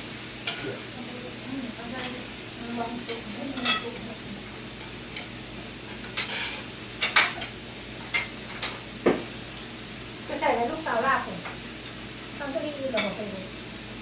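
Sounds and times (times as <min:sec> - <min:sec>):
food sizzling: 0:00.0 - 0:14.0
utensils clinking on dishes: 0:03.0 - 0:04.1, 0:06.0 - 0:08.8, 0:12.9 - 0:13.3.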